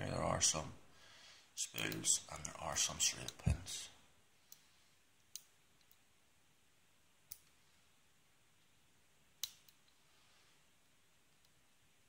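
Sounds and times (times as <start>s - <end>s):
lock pick metallic clicks: 9.4s - 10.0s.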